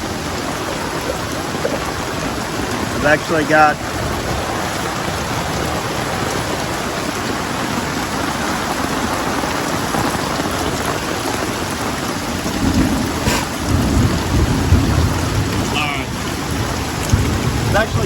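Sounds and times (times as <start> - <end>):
heavy rain pouring: 0.0 - 18.0
low rumble of thunder: 12.2 - 18.0.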